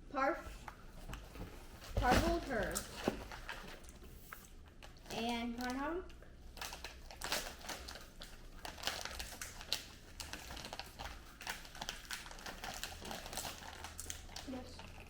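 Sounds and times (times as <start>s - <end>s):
plastic snack packet crinkling: 6.4s - 15.0s.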